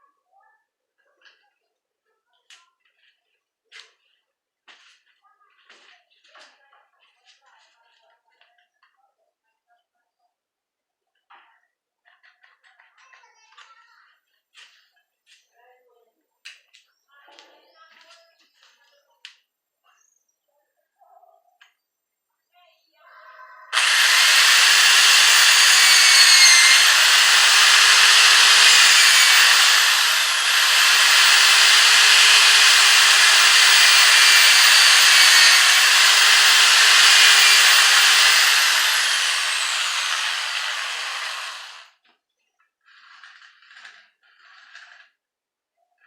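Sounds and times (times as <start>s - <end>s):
compressed air hissing out: 23.8s - 41.5s.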